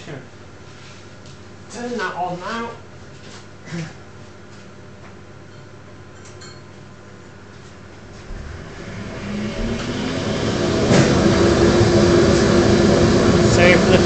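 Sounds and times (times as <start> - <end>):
dust collector motor whine: 8.1 - 14.0.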